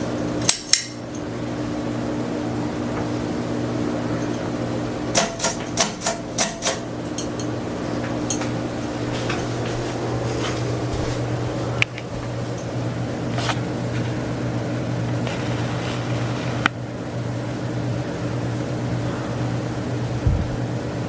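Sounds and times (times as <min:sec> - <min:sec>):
ceiling fan motor hum: 0:00.0 - 0:21.0
rush of air: 0:20.2 - 0:20.7.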